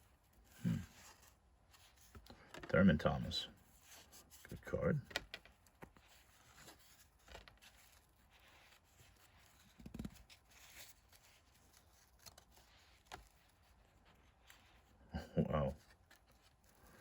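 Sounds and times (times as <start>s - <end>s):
trading cards rustling and clicking: 0.3s - 15.0s.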